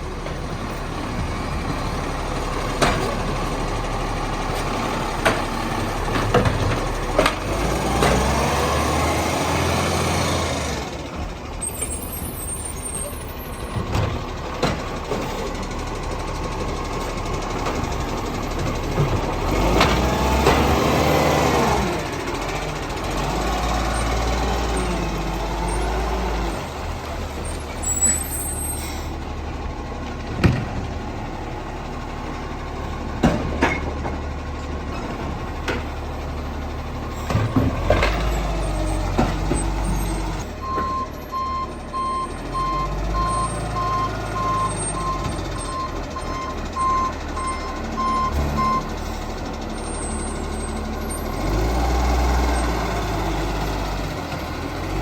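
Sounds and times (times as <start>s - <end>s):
garbage truck engine running: 0.0s - 55.0s
reversing alarm beeping: 40.6s - 49.0s.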